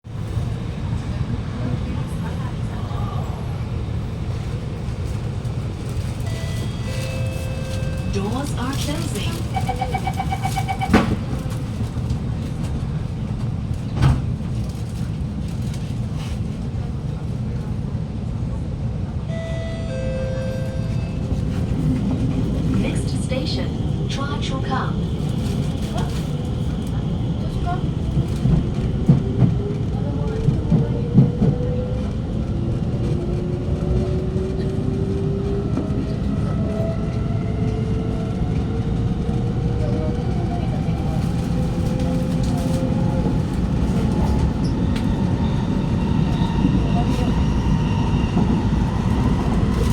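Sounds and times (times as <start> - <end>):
low rumble inside carriage: 0.0 - 49.9
train propulsion whine: 5.7 - 12.2
train doors thudding shut: 8.9 - 11.8.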